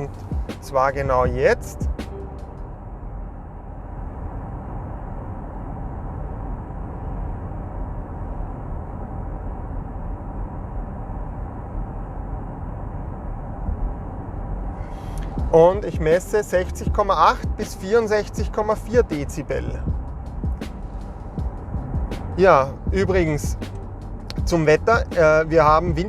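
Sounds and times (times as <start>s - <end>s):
tyre and wind noise in car cabin: 0.0s - 26.0s.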